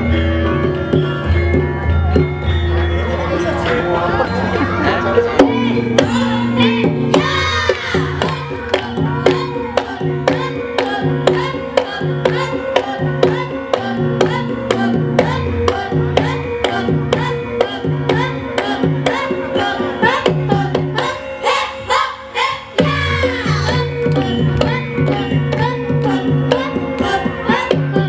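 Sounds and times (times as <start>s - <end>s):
drum: 22.8s - 27.2s.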